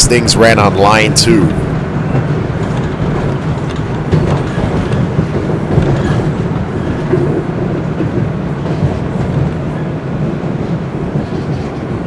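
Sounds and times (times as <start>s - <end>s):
subway train rumbling on track: 0.0s - 12.0s.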